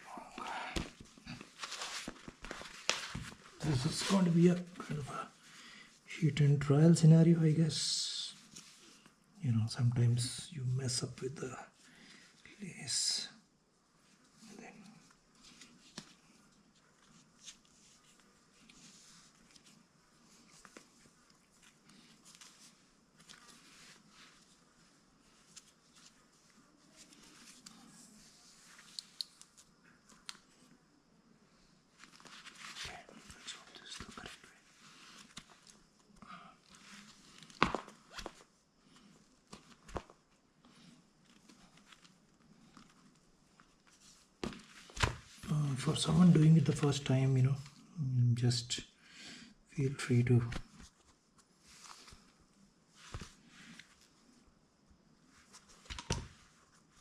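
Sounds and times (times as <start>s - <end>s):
lace rustling through sandal: 1.3s - 4.7s.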